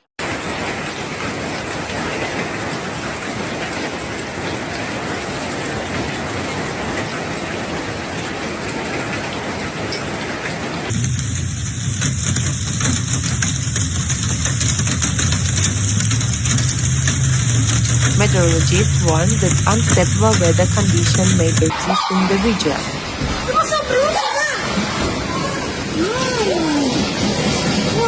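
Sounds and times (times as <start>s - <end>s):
heavy rain downpour: 0.0s - 28.0s
rapid ticks: 10.9s - 21.7s
low steady drone: 10.9s - 23.1s.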